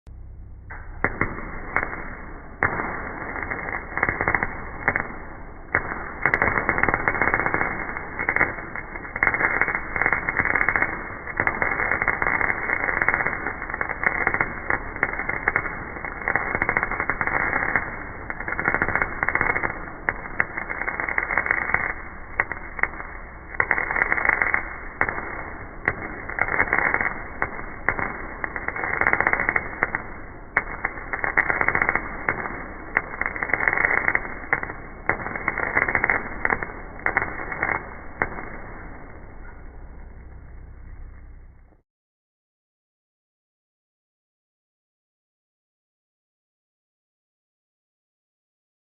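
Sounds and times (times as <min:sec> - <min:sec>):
arc welder crackling: 0:00.1 - 0:41.8.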